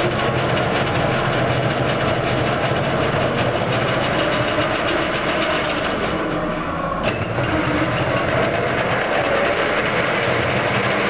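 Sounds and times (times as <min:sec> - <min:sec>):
bench lathe whirring: 0:02.2 - 0:11.0.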